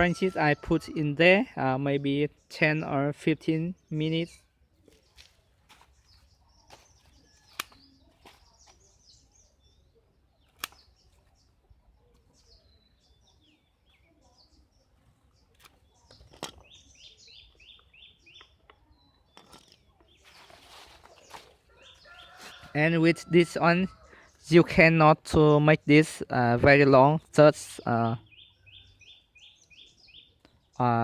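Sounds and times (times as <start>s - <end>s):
small birds chirping: 0.0s - 31.0s
sharp clicks: 7.5s - 7.8s, 10.5s - 10.9s.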